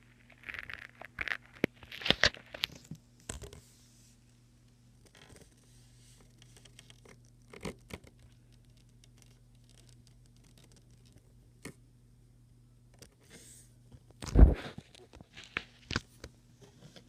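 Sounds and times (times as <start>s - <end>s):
steady low hum: 0.0s - 17.0s
geckos scratching and clicking: 5.0s - 11.8s.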